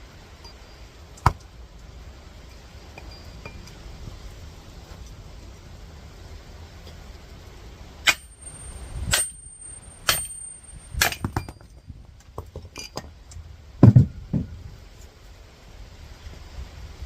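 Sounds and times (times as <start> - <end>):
hammer clanging on metal: 8.1 - 11.8
heavy dull thump: 13.8 - 14.6.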